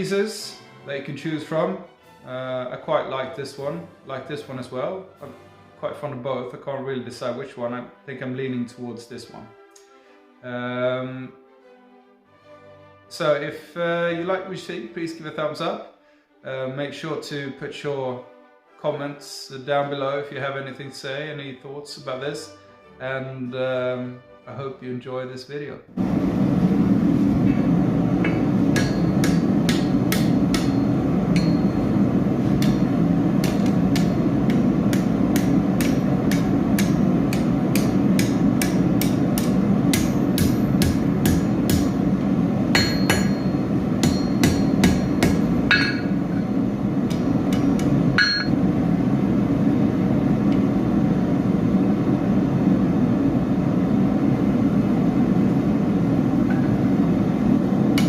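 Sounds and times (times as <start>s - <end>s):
hammer striking steel on anvil: 27.5s - 42.1s, 42.7s - 48.6s, 56.5s - 56.9s.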